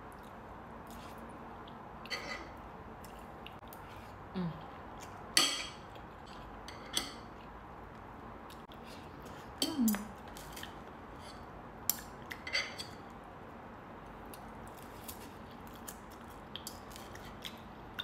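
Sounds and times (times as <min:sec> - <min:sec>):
cutlery scraping a plate: 0:02.1 - 0:02.6, 0:12.3 - 0:13.0.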